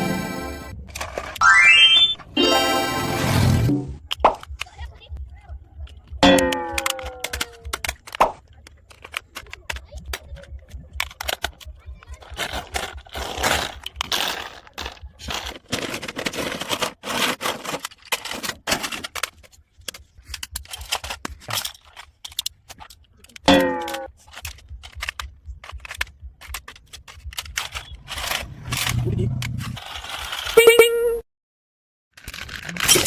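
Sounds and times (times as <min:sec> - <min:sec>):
plastic clicks and rattles: 0:05.8 - 0:30.6, 0:32.2 - 0:33.0.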